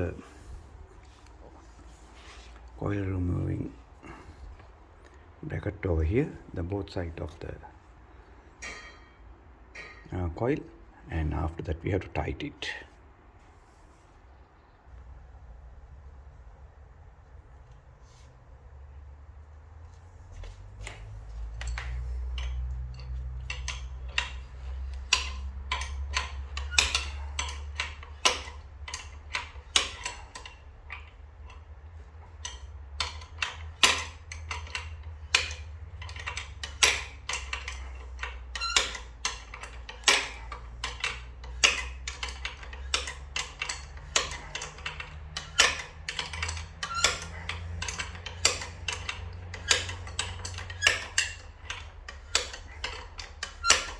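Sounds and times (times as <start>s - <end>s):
ratchet wrench clicking: 20.8s - 53.9s.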